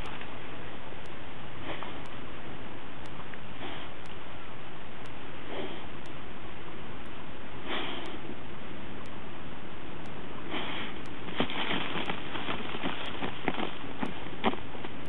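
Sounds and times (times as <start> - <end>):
dog sniffing and blowing: 5.4 - 5.9, 7.6 - 8.3, 10.5 - 11.0
dog paws digging earth: 10.5 - 15.0.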